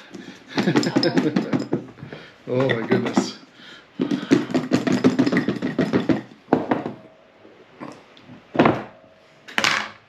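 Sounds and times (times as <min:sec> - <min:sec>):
kitchenware clattering: 0:00.0 - 0:10.0.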